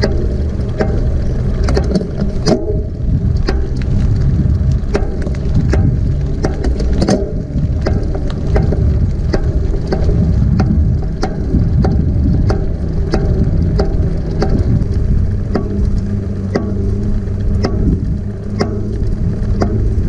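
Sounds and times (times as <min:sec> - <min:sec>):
bike frame clicking: 0:00.0 - 0:20.0
tyre rumble: 0:00.0 - 0:20.0
wind: 0:00.0 - 0:20.0.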